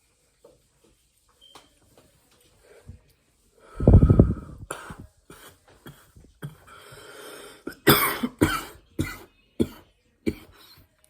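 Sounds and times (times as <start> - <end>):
man coughing hard: 7.7 - 10.5.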